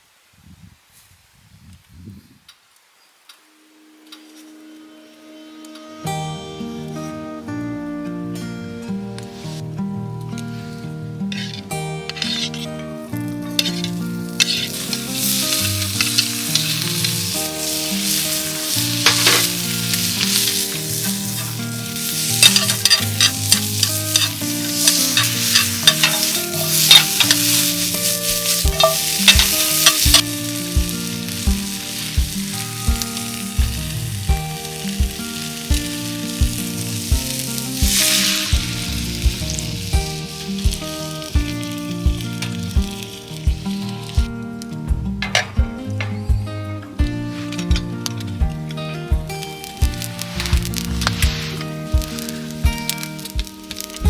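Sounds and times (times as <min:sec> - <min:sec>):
background music with steady beat: 0:04.5 - 0:54.0
food sizzling in a pan: 0:09.3 - 0:54.0
stirring in a pan: 0:11.3 - 0:12.7, 0:13.5 - 0:30.4.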